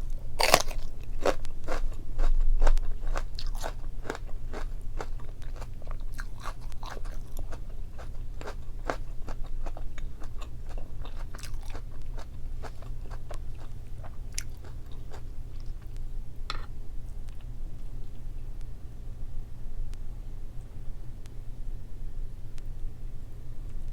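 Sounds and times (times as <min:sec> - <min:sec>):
steady low hum: 0:00.0 - 0:23.9
close chewing and biting: 0:00.4 - 0:15.9.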